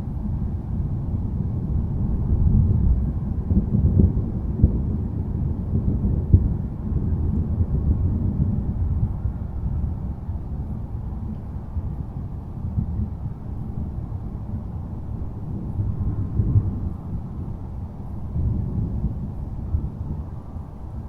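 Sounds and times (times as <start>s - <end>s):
low rolling thunder: 0.2s - 21.0s.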